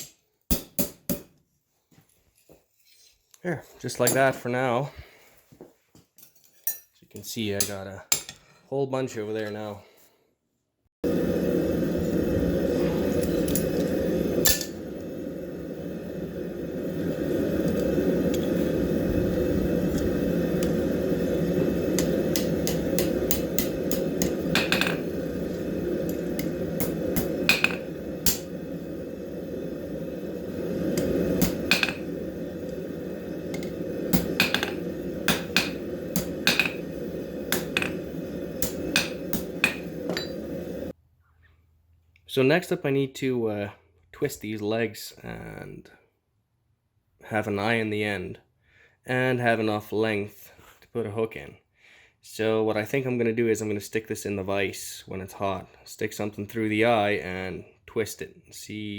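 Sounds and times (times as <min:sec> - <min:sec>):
steady low rushing noise: 0:11.0 - 0:40.9.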